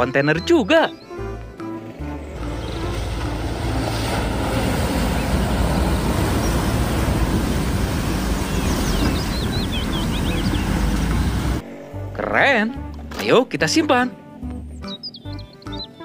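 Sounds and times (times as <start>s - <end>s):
bird chirps: 0.0s - 1.3s, 8.1s - 12.1s, 14.6s - 16.0s
traffic rumble: 1.1s - 13.2s.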